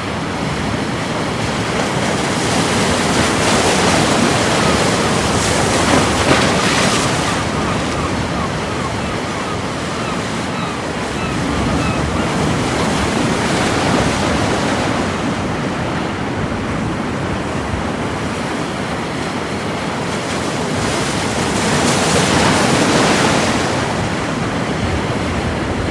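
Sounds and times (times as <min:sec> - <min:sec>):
surf breaking on a beach: 0:00.0 - 0:25.9.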